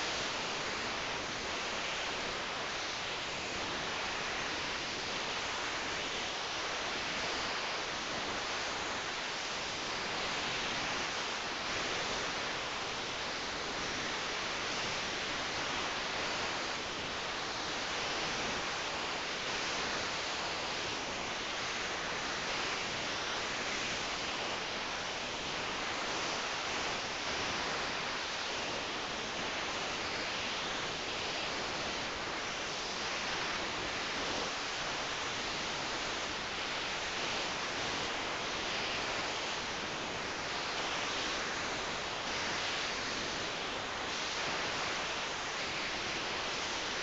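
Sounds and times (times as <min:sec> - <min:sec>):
steady background hiss: 0:00.0 - 0:47.0.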